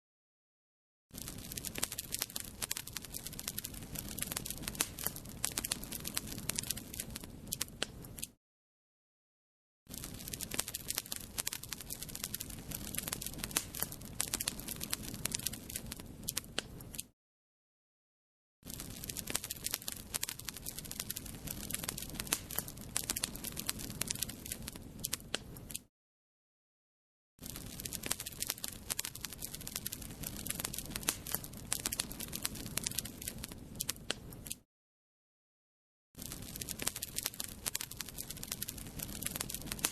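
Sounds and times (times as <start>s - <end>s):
low rush of flames: 1.2s - 8.0s, 10.0s - 16.7s, 18.8s - 25.5s, 27.6s - 34.2s
fire crackling: 1.2s - 8.2s, 9.9s - 17.0s, 18.7s - 25.8s, 27.4s - 34.5s, 36.2s - 39.9s.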